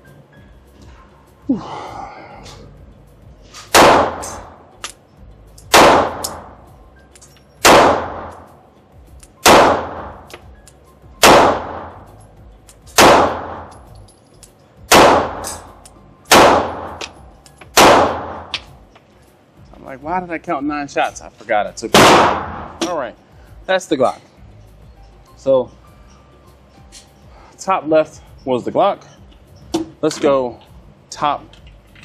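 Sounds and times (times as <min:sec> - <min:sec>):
pistol shots: 0:03.7 - 0:04.5, 0:05.7 - 0:06.5, 0:07.6 - 0:08.5, 0:09.4 - 0:10.4, 0:11.2 - 0:12.0, 0:12.9 - 0:13.7, 0:14.9 - 0:15.7, 0:16.3 - 0:18.7, 0:21.9 - 0:22.9.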